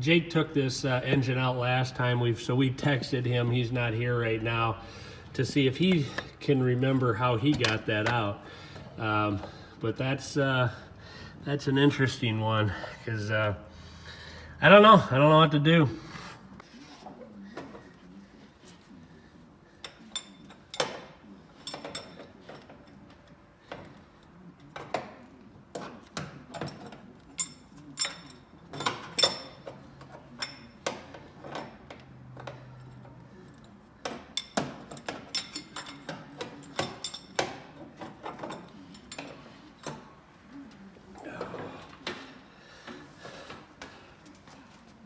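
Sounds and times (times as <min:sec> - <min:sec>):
hand tools clinking on metal: 0:19.8 - 0:23.1, 0:25.8 - 0:40.1.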